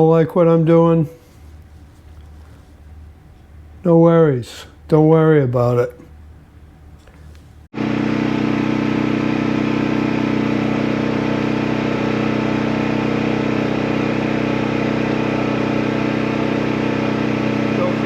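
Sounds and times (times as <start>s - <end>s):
generator engine running: 7.7s - 18.0s.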